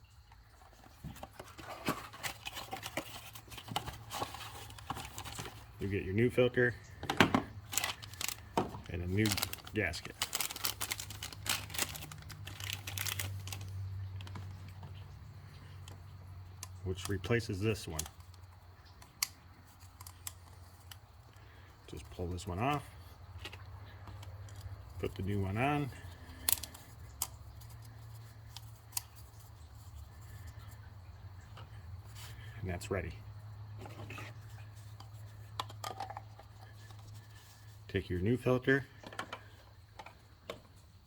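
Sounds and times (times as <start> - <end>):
rustling of oil filter handling: 0.0 - 41.0.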